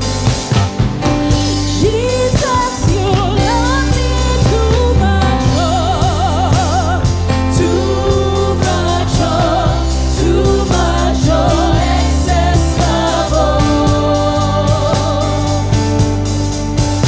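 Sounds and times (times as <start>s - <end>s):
gospel band with bass and drums: 0.0s - 17.0s
person singing with vibrato: 1.3s - 16.4s.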